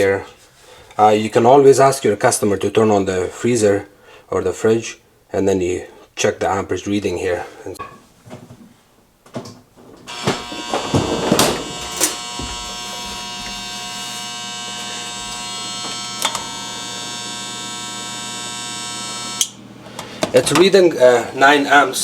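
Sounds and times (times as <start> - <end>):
refrigerator compressor humming: 9.8 - 22.0.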